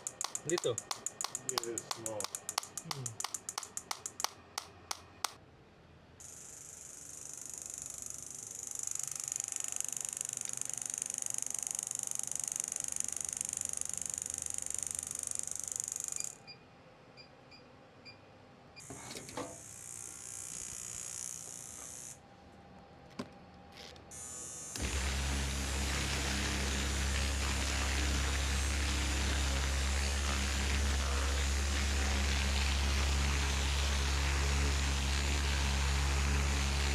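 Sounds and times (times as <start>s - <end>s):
massage device motor buzzing: 0.0s - 5.3s, 24.2s - 36.9s
loud deep steady noise: 24.8s - 36.9s.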